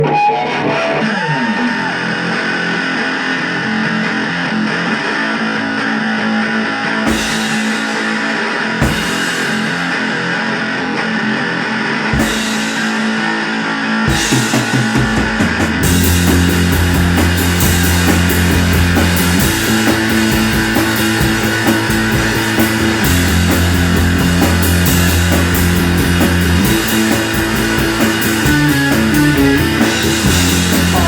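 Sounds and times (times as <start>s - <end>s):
electric guitars droning chord: 0.0s - 31.0s
drums playing: 6.8s - 10.6s, 12.0s - 31.0s.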